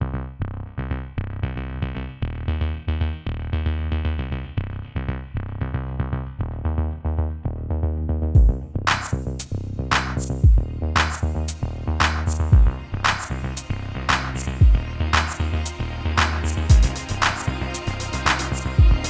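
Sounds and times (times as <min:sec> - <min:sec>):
electronic synthesizer music: 0:10.6 - 0:19.0.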